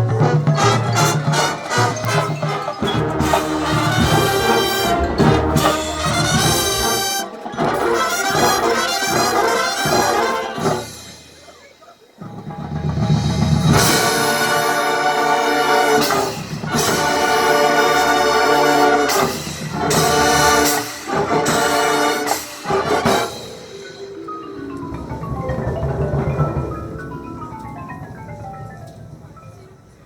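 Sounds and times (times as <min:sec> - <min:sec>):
band playing held chords: 0:00.0 - 0:07.6
mallet percussion descending runs: 0:00.7 - 0:07.2, 0:22.6 - 0:30.0.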